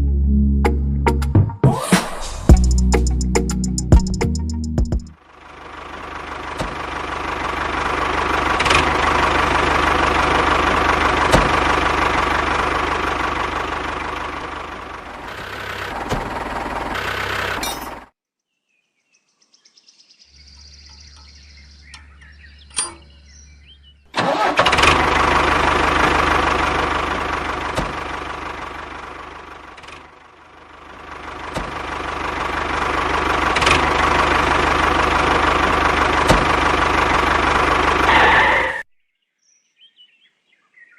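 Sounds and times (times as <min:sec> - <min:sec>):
motor humming: 0:06.0 - 0:18.1.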